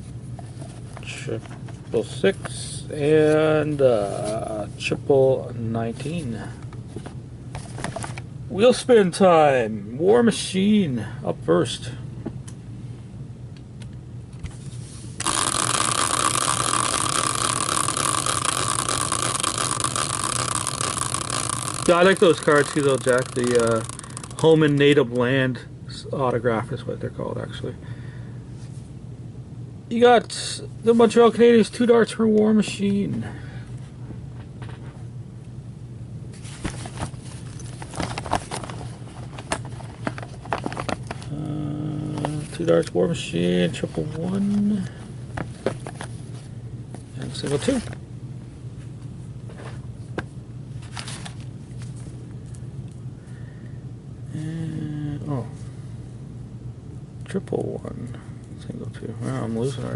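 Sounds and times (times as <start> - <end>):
prize wheel whirring rattle: 15.2 - 24.6.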